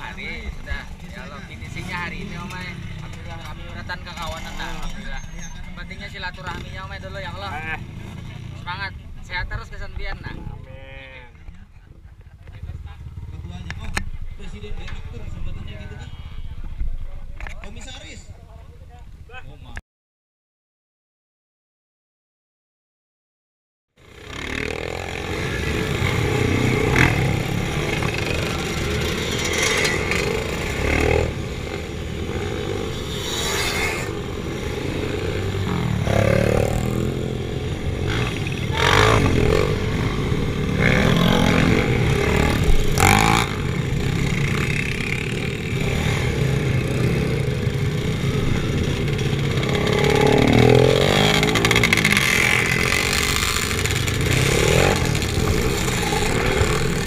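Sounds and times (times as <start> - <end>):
motorcycle engines revving: 0.0 - 18.8, 24.0 - 57.0
clatter: 27.9 - 31.1.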